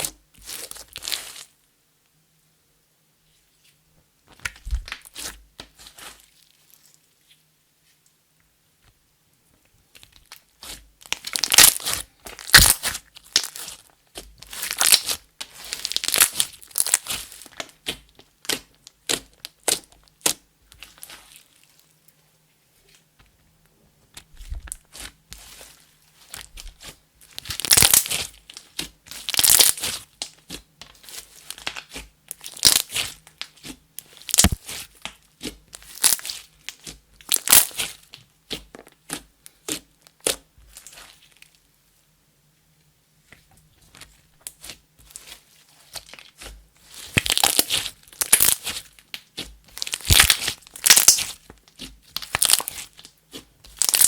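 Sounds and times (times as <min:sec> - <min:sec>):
slime being squeezed by hand: 0:11.2 - 0:13.8, 0:31.0 - 0:38.1, 0:44.6 - 0:54.0.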